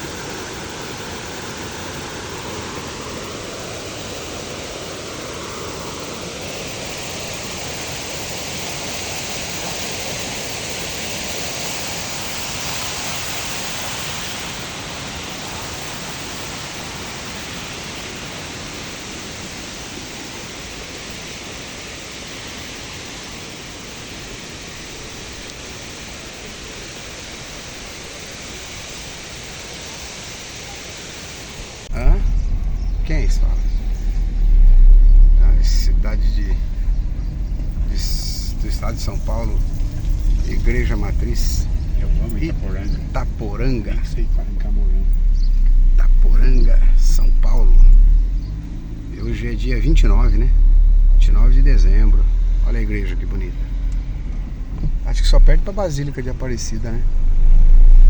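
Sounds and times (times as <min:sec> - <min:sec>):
faint wavering tone: 0:31.9 - 0:58.0.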